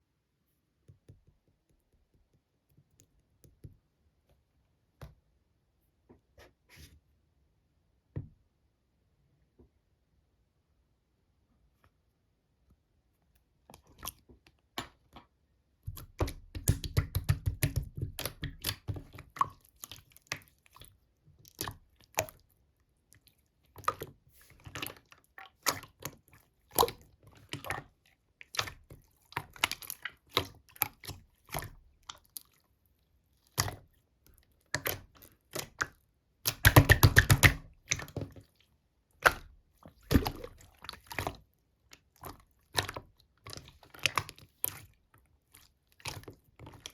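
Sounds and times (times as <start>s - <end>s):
wet clicks of slime: 15.9s - 20.5s, 26.8s - 27.9s, 34.7s - 38.3s, 39.2s - 44.9s
air bubbles popping: 36.5s - 37.7s, 40.1s - 40.6s.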